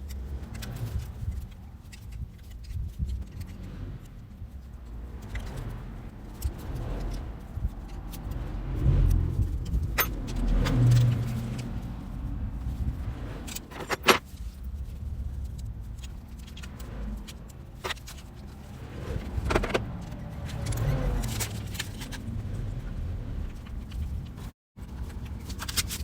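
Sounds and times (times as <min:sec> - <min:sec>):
low rumble: 0:04.8 - 0:13.7.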